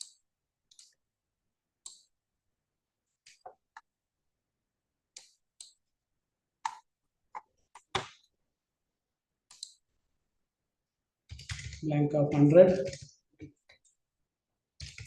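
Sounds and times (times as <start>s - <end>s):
keyboard and mouse clicks: 0.0s - 1.0s, 1.8s - 2.2s, 3.2s - 3.9s, 5.1s - 5.8s, 6.6s - 8.3s, 9.5s - 9.8s, 11.3s - 14.0s, 14.8s - 15.0s.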